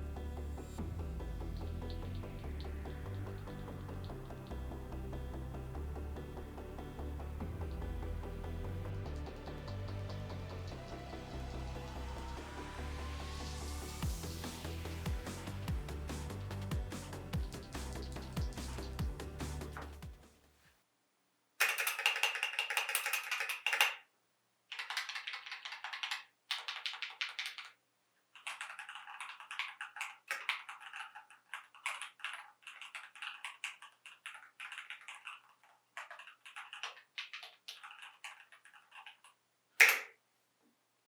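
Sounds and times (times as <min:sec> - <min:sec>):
mechanical keyboard typing: 0:21.6 - 0:24.0, 0:24.7 - 0:27.8, 0:28.4 - 0:40.1.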